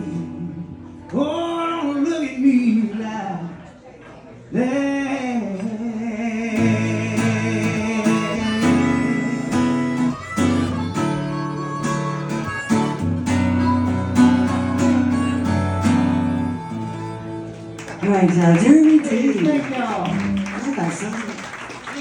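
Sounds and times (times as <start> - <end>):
acoustic guitar playing: 6.3 - 19.7.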